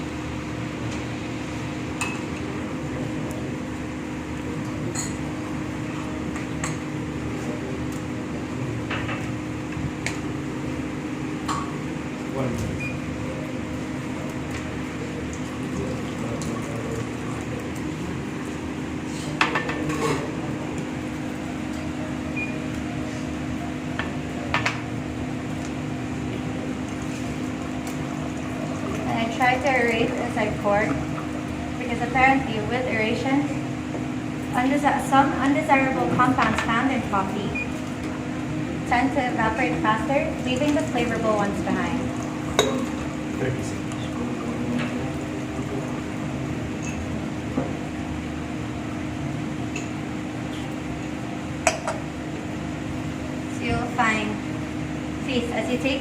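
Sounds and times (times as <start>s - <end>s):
room hum: 0.0s - 56.0s
tableware clinking: 4.9s - 5.2s, 42.6s - 42.9s
glassware and cups clinking: 42.5s - 43.0s.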